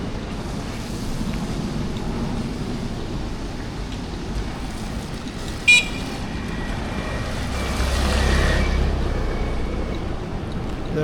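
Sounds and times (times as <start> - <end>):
street traffic: 0.0 - 11.0
vehicle passing close: 4.8 - 10.4
high-pitched horn beep: 5.7 - 6.2.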